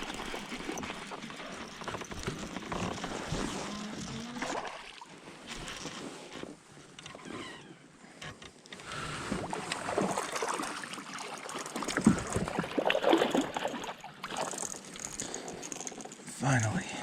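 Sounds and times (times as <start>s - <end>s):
water splashing: 3.0s - 5.2s, 9.4s - 16.0s.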